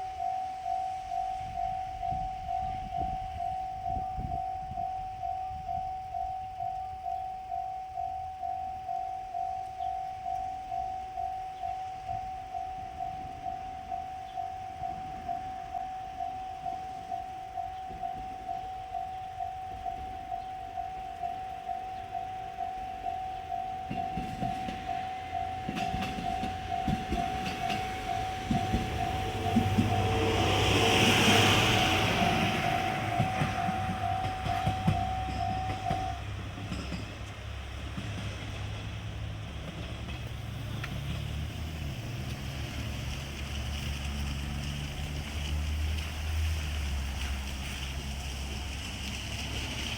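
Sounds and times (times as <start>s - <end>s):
level crossing warning bell: 0.0s - 43.4s
diesel railcar engine droning: 0.0s - 49.9s.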